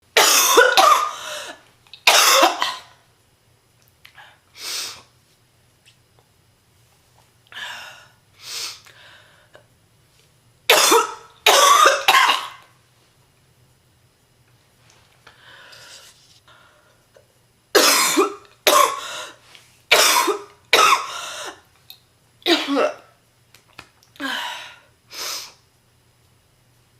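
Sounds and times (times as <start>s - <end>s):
woman coughing: 0.2s - 1.4s, 2.1s - 3.0s, 10.7s - 12.6s, 17.8s - 19.1s, 19.9s - 21.6s, 22.5s - 23.1s.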